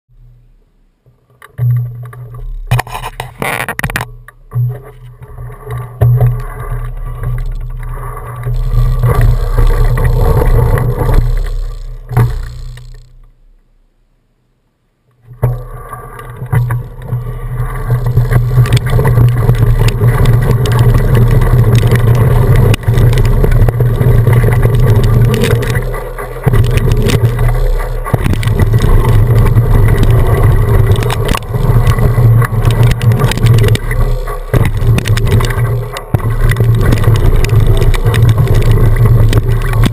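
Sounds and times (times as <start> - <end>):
tyre rumble over rough trail: 5.1 - 13.1, 15.4 - 39.9
small knocks and rattles: 17.8 - 39.9.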